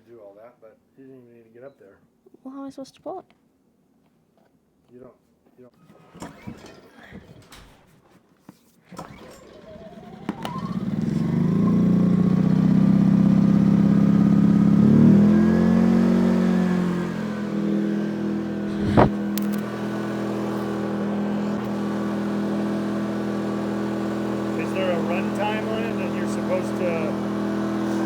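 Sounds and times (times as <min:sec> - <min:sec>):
generator engine running: 0:09.0 - 0:28.0.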